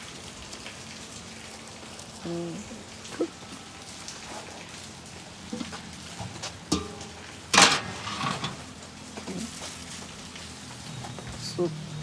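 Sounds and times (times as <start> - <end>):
steady rain: 0.0 - 7.6, 8.5 - 12.0
dishes and utensils clinking: 6.7 - 8.7.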